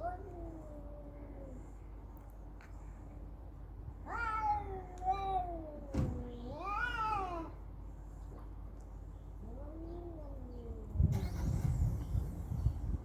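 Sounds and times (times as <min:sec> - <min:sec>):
cats yowling: 0:04.0 - 0:07.6, 0:09.4 - 0:11.0.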